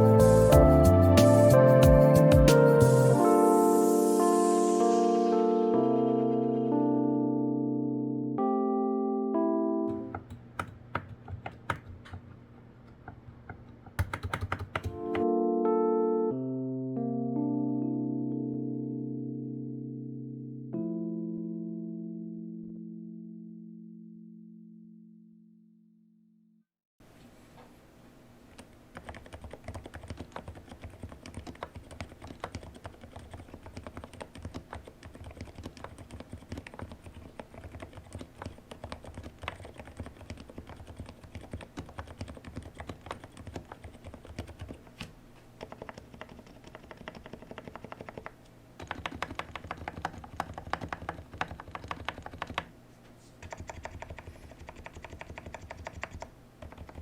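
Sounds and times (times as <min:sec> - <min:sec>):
typing on mechanical keyboard: 0:09.9 - 0:12.3, 0:13.5 - 0:15.3, 0:28.9 - 0:44.8, 0:45.6 - 0:52.7, 0:53.4 - 0:57.0.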